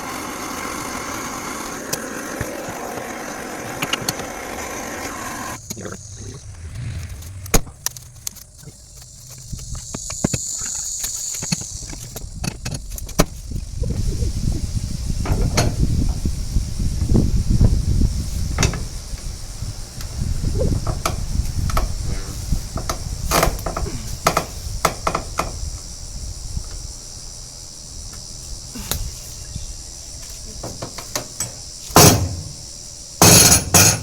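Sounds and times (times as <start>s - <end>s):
insects chirping: 0.0s - 34.0s
loud bangs: 6.1s - 8.1s
metal knocks and clanks: 18.6s - 18.9s, 30.6s - 32.6s, 33.2s - 34.0s.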